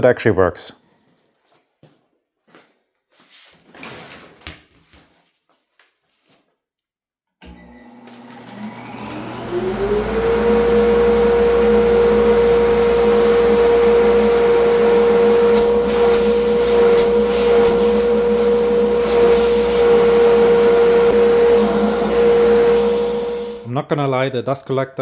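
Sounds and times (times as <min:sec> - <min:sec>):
dust collector motor whine: 0:07.4 - 0:23.7.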